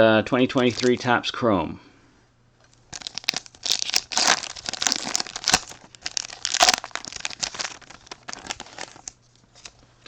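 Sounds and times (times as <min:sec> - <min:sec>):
wrapper tearing and crinkling: 0:00.6 - 0:01.1, 0:02.9 - 0:09.8.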